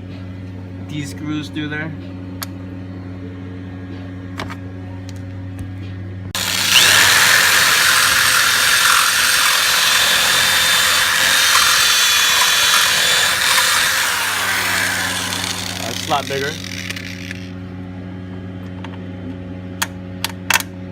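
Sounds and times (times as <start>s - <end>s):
power drill whining: 6.4s - 17.5s.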